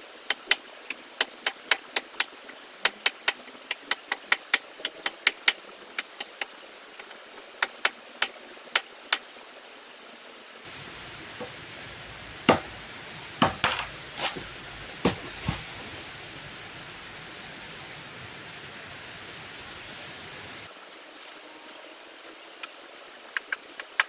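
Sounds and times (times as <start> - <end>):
steady hiss: 0.0 - 24.0
sharp knocks and cracks: 12.5 - 12.8, 13.4 - 15.7.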